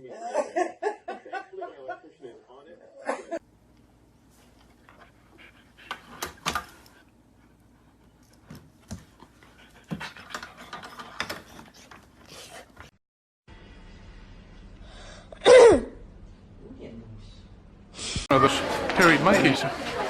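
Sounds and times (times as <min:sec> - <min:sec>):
dog panting: 0:04.6 - 0:12.9.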